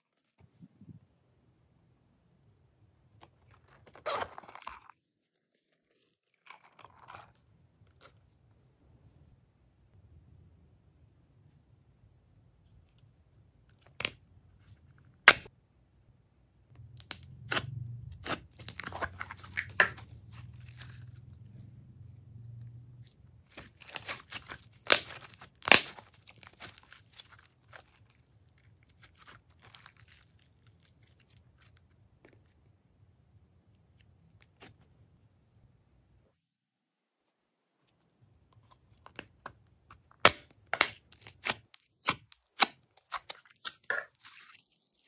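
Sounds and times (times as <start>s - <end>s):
crackly tearing and crinkling: 23.0s - 32.0s, 41.0s - 45.0s.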